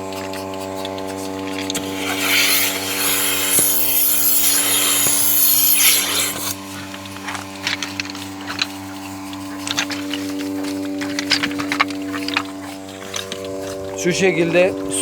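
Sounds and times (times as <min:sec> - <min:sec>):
vacuum pump humming: 0:00.0 - 0:15.0
air hissing into vacuum: 0:01.8 - 0:06.6.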